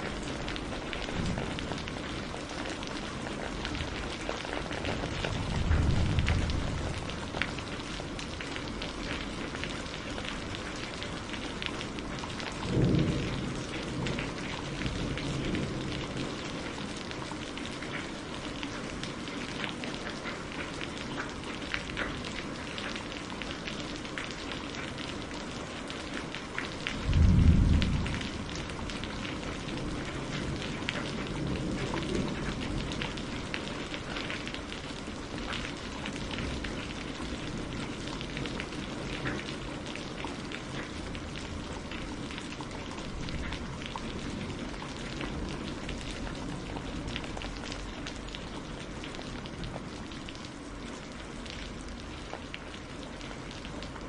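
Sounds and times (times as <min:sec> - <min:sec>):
steady rain: 0:00.0 - 0:54.0
thunder clap rumbling: 0:04.8 - 0:07.5, 0:27.0 - 0:30.7.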